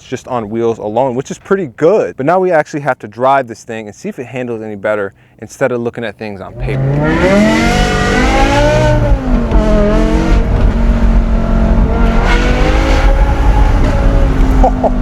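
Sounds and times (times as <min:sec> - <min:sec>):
car engine accelerating hard: 0:06.5 - 0:15.0.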